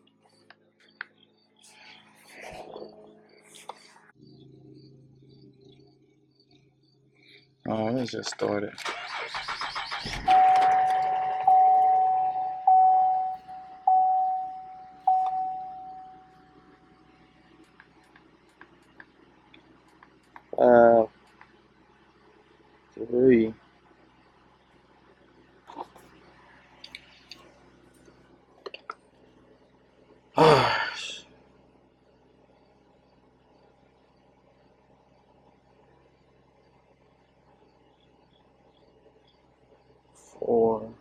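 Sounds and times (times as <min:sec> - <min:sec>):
faint steady hum: 0:00.0 - 0:41.0
dashboard warning chime: 0:10.3 - 0:16.3
person sighing: 0:30.4 - 0:31.2.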